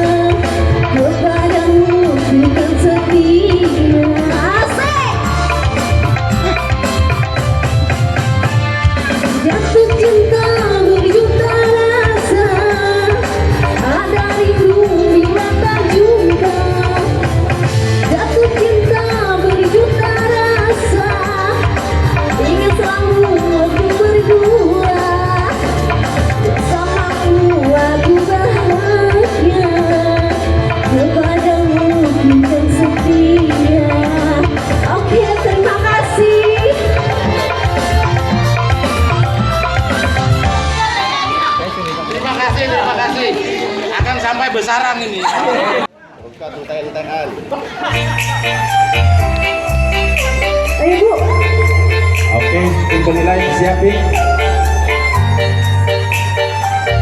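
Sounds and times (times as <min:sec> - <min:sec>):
band with hand drums: 0:00.0 - 0:43.4, 0:47.9 - 0:57.0
person singing: 0:09.4 - 0:41.4.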